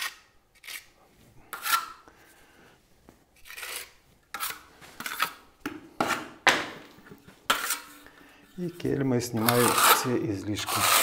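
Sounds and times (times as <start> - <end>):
spatula scraping wet plaster: 1.5 - 2.0, 3.4 - 5.4, 7.5 - 11.0.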